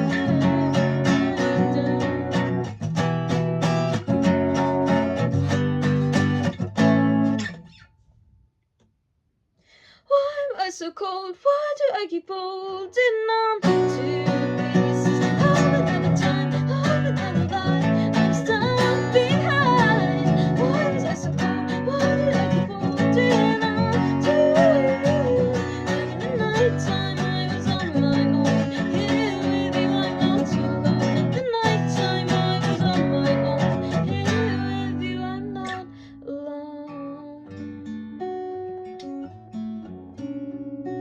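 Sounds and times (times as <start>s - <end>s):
sparsely picked guitar notes: 0.0s - 7.7s, 13.7s - 35.9s
acoustic guitar strumming: 0.0s - 7.8s, 13.6s - 36.0s.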